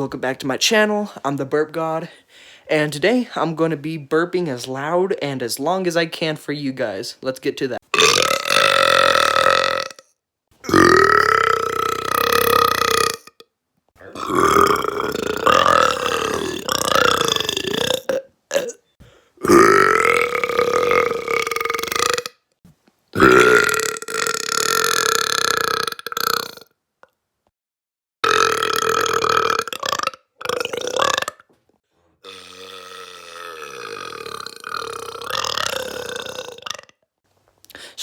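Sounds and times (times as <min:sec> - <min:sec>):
person burping: 0:07.9 - 0:10.0, 0:10.6 - 0:13.4, 0:14.0 - 0:22.3, 0:23.2 - 0:26.7, 0:28.2 - 0:31.5, 0:32.2 - 0:37.0.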